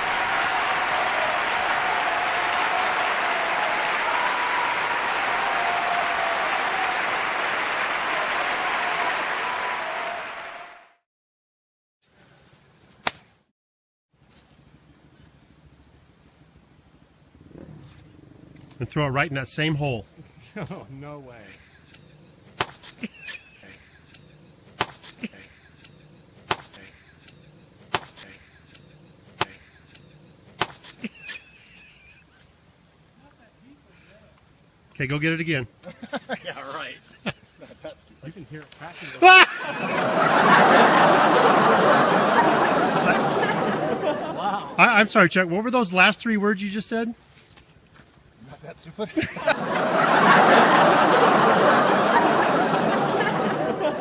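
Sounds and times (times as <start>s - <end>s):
crowd clapping: 0.0s - 11.0s, 39.6s - 44.2s, 49.6s - 54.0s
sharp cracks: 13.0s - 13.4s, 21.9s - 23.4s, 24.1s - 31.5s.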